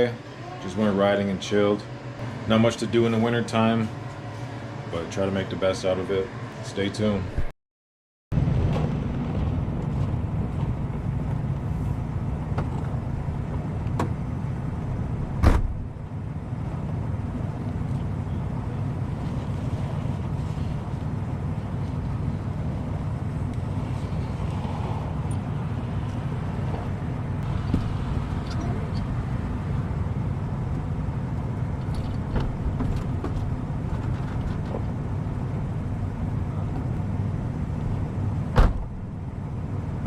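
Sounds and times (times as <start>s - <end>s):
vehicle engine and road noise: 0.0s - 7.5s, 8.3s - 40.0s
sharp thump: 15.4s - 15.9s, 38.6s - 39.0s.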